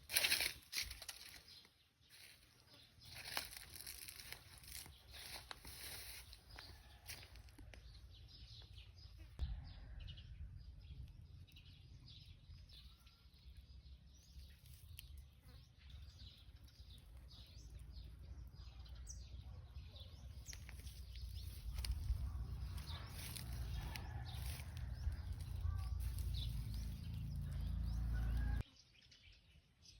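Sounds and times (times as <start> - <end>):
small birds chirping: 0.0 - 9.4, 10.8 - 29.9
steady low rumble: 21.2 - 28.6.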